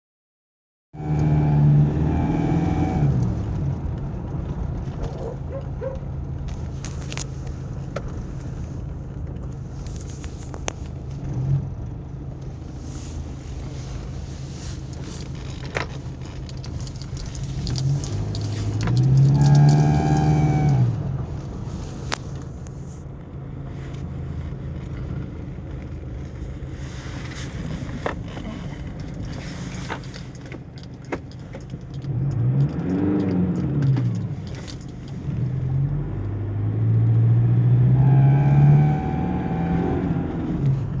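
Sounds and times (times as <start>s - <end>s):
engine idling and revving: 0.9s - 41.0s.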